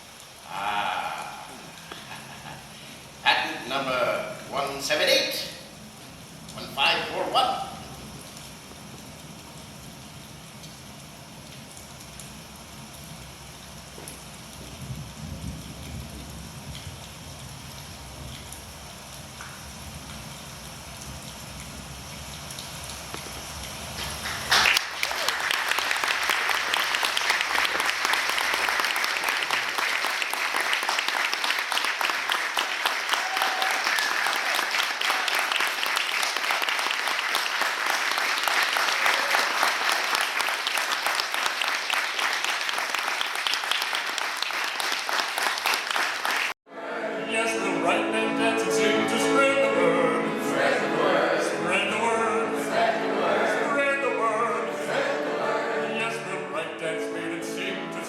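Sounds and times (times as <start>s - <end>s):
audience applauding: 24.0s - 46.6s
music with operatic singing: 46.7s - 58.0s.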